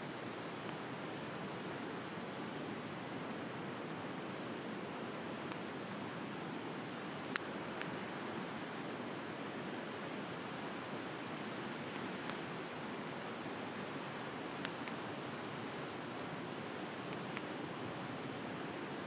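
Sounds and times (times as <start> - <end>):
wood fire crackling and popping: 6.9 - 8.7, 11.8 - 18.1.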